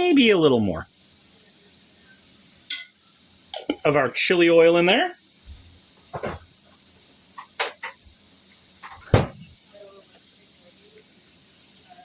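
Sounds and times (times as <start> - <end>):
onions sizzling in a pan: 0.0 - 12.0
utensil knocks: 5.5 - 6.5, 7.4 - 8.1, 8.8 - 9.6.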